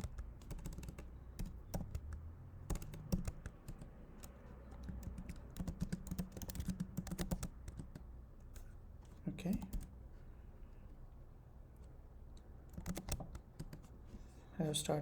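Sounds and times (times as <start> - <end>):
computer keyboard typing: 0.0 - 10.0, 12.6 - 14.0.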